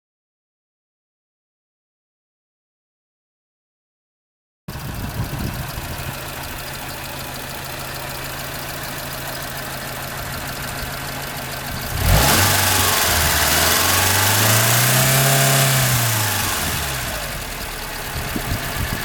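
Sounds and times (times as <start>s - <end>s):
car engine idling: 4.7s - 19.0s
engine ticking: 4.7s - 19.0s.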